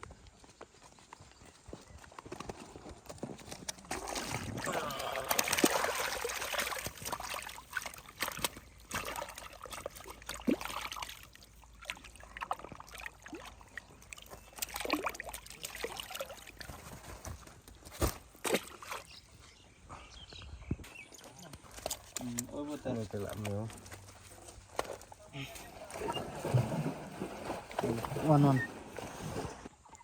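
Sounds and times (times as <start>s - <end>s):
water sloshing and trickling: 3.7s - 19.5s, 20.8s - 30.0s
small splashes: 3.9s - 17.2s, 18.0s - 19.2s, 20.9s - 24.1s, 24.7s - 29.7s.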